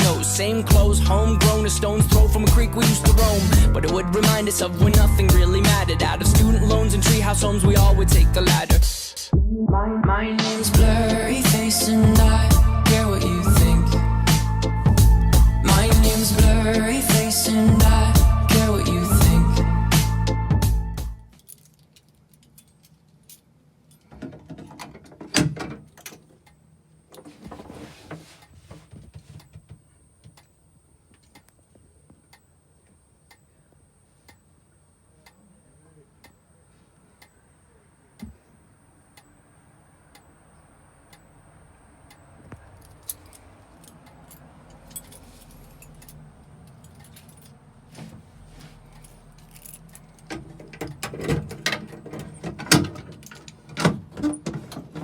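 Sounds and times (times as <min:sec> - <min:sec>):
rattling jangling handling noises: 0:21.3 - 0:26.3, 0:42.8 - 0:55.0
faint high whine: 0:29.2 - 0:53.5.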